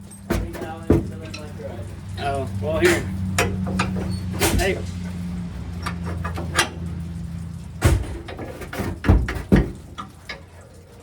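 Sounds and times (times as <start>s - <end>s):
metal parts knocking and clanking: 2.8s - 4.9s, 7.8s - 10.5s.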